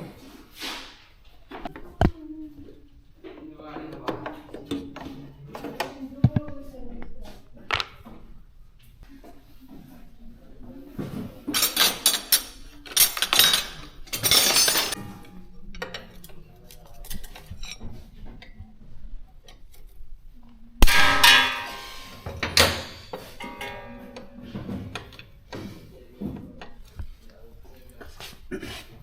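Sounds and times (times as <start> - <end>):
metal tools clinking and clattering: 11.5 - 18.1, 20.8 - 25.7
sharp metallic hit: 20.8 - 24.5.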